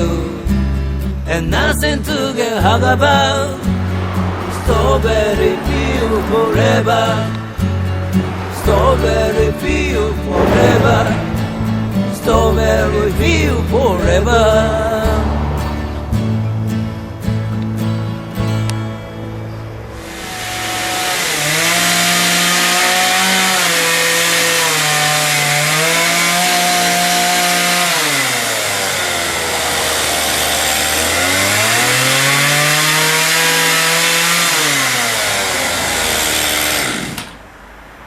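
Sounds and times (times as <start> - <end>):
chainsaw revving: 3.1 - 13.8, 19.9 - 37.4.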